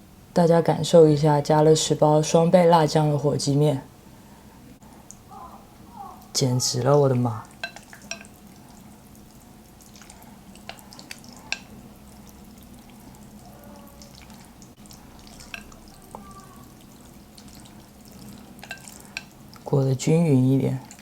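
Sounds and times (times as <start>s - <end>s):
wet sticky noodles stirring: 5.8s - 21.0s
utensil clicking against bowl: 10.0s - 11.8s.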